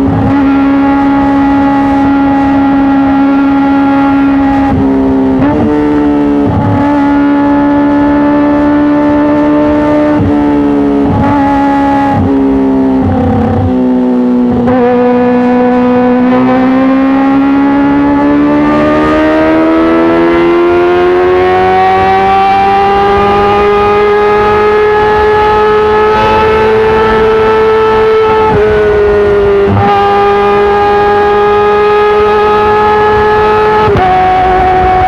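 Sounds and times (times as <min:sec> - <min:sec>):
motorcycle engine revving: 0:00.0 - 0:35.0.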